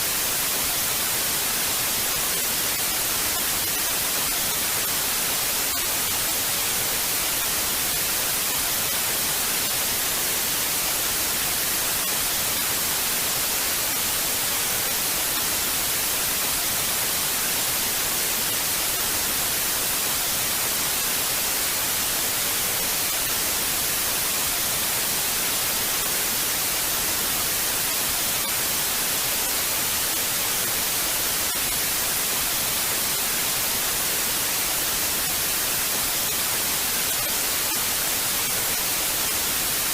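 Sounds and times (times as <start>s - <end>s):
television static hiss: 0.0s - 39.9s.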